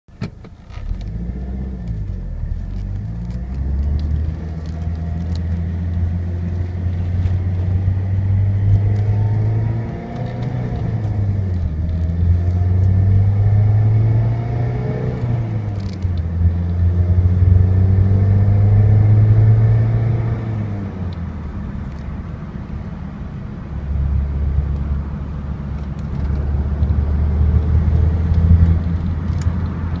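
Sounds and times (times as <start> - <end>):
low engine rumble: 0.1 - 30.0
car engine revving: 0.7 - 22.0, 23.7 - 30.0.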